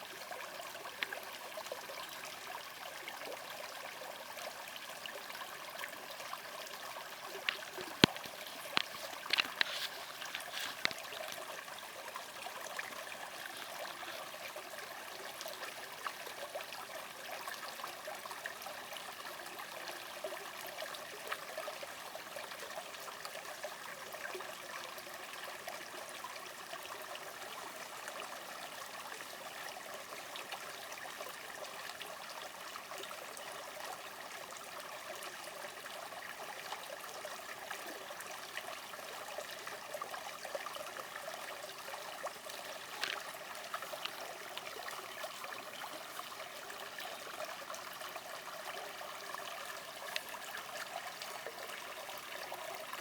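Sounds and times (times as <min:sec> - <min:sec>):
spring water trickling: 0:00.0 - 0:23.4, 0:40.3 - 0:53.0.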